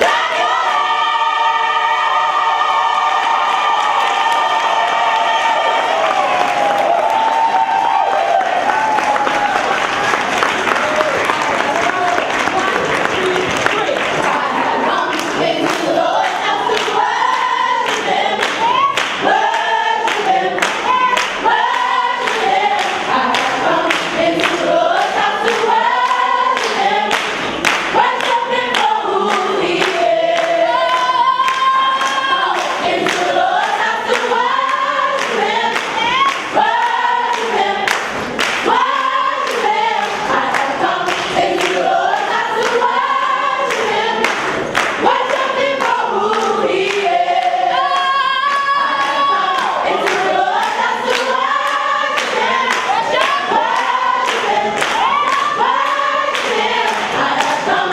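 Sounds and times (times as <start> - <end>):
gospel choir singing: 0.0 - 57.9
sharp hand claps: 17.8 - 30.6, 37.3 - 38.7.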